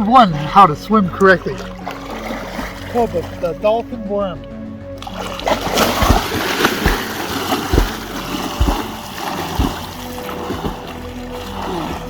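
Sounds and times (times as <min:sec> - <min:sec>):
swimmer splashing water: 0:00.2 - 0:03.7, 0:05.0 - 0:12.0
low thump and splash: 0:01.2 - 0:03.4, 0:05.0 - 0:12.0.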